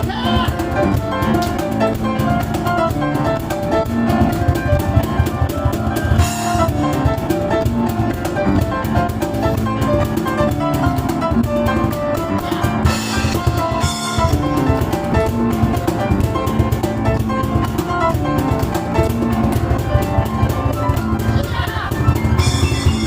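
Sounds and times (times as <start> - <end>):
cajon beat: 0.0 - 23.0
piano playing fast: 0.0 - 23.0.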